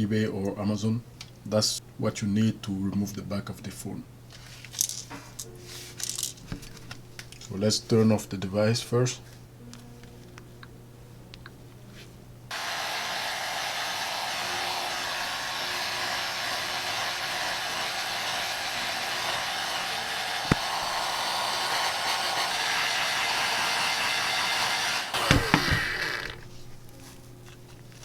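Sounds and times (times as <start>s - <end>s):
heat gun blowing: 12.5s - 26.8s.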